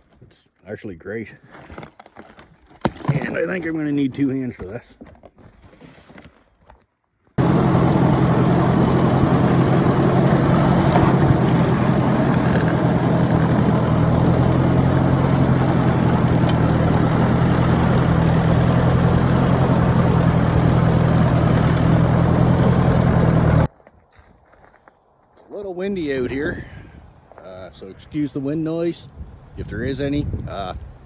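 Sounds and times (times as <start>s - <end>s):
tractor engine running: 7.4s - 23.7s.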